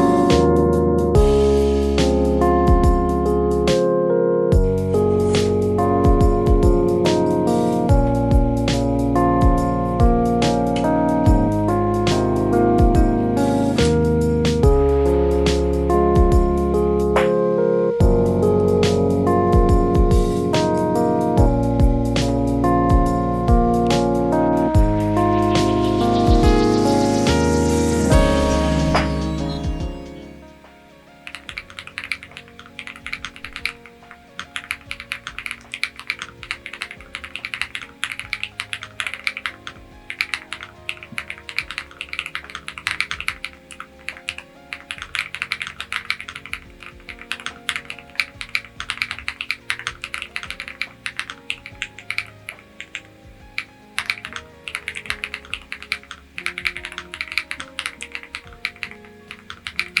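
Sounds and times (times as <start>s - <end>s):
soft background music: 0.0s - 60.0s
mechanical keyboard typing: 31.2s - 60.0s.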